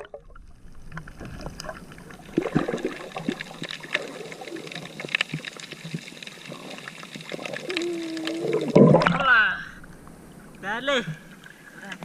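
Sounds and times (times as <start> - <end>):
sea water sloshing: 0.0 - 12.0
small splashes and clicks: 0.9 - 9.2.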